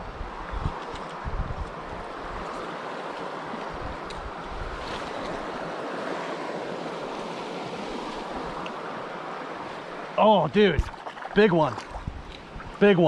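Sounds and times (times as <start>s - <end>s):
wind buffets on microphone: 0.0s - 8.7s, 11.7s - 12.9s
stream water running over rocks: 1.7s - 13.0s.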